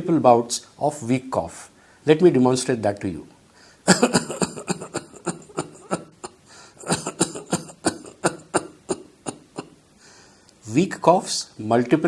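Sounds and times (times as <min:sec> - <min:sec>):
man coughing weakly: 0:03.9 - 0:09.8.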